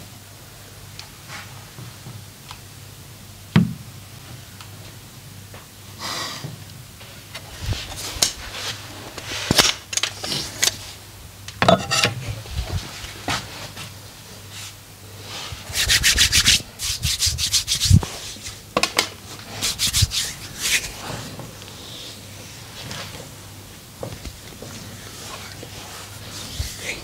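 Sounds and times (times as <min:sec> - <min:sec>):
hands brushing rubs: 0:15.4 - 0:18.6, 0:19.3 - 0:21.2, 0:24.8 - 0:27.0.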